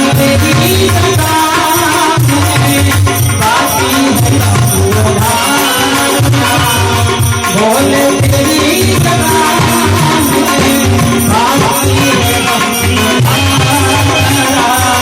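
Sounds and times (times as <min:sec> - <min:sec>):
drum steady beat: 0:00.0 - 0:15.0
rattling hand percussion: 0:00.0 - 0:15.0.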